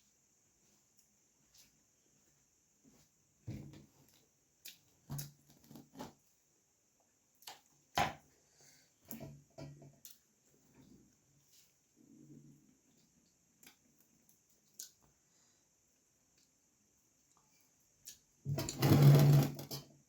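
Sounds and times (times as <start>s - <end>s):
chewing mouth clicks and smacks: 14.7s - 15.1s.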